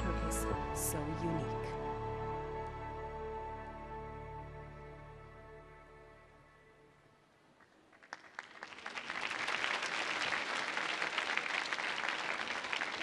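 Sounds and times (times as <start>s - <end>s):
music: 0.0s - 7.6s
audience applause: 7.9s - 13.0s.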